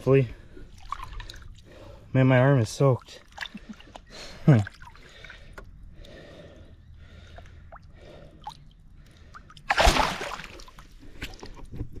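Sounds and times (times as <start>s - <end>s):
water sloshing and dripping: 0.0s - 11.9s
loud water splash: 9.7s - 10.7s.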